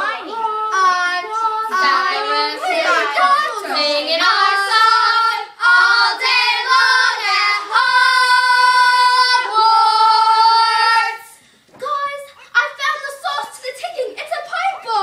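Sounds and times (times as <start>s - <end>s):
girls singing: 0.0s - 11.4s.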